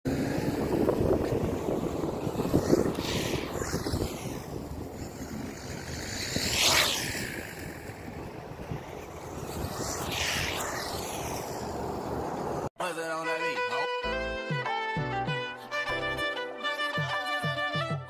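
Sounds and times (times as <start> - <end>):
road traffic: 0.0 - 12.8
vehicle passing: 0.1 - 12.7
wind on microphone: 0.1 - 12.7.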